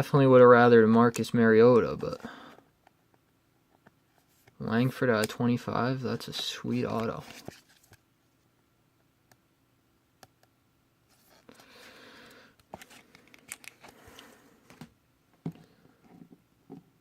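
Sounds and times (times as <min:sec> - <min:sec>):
trading cards rustling: 0:06.3 - 0:08.0, 0:12.6 - 0:14.9.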